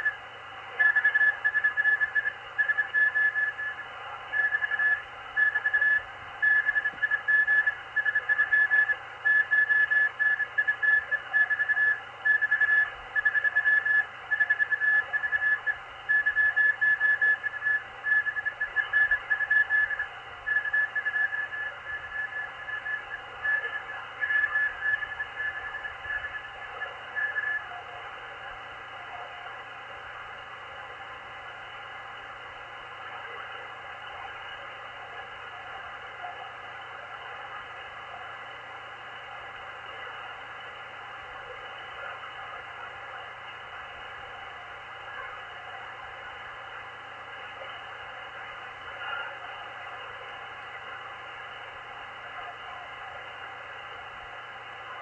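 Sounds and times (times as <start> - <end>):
radio static hiss: 0.0 - 55.0
morse code tone: 0.8 - 27.7.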